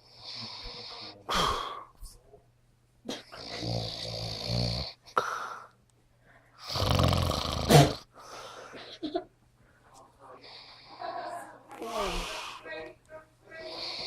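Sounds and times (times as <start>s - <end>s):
man snoring: 3.4s - 5.0s, 6.6s - 8.0s.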